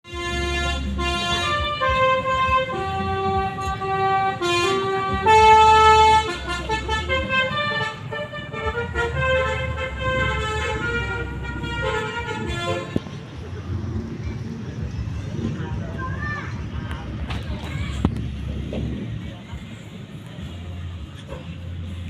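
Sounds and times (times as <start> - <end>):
musical bus horn playing tune: 0.0 - 13.0.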